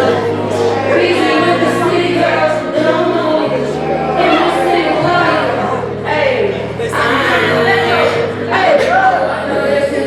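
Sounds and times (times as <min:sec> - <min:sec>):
bass line: 0:00.0 - 0:10.0
voices singing together: 0:00.0 - 0:10.0.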